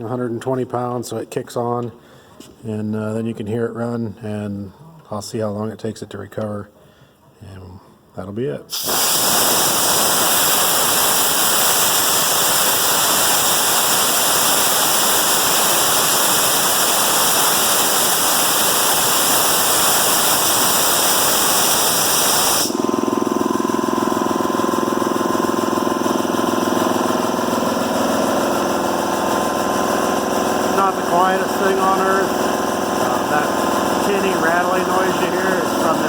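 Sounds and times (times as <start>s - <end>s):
compressed air hissing: 8.7s - 23.0s, 30.4s - 36.0s
air compressor running: 8.7s - 36.0s.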